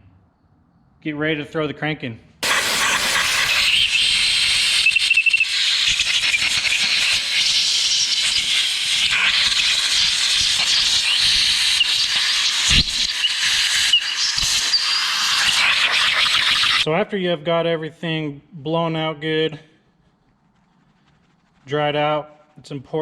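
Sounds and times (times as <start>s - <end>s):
compressed air gun hissing: 2.4s - 16.9s.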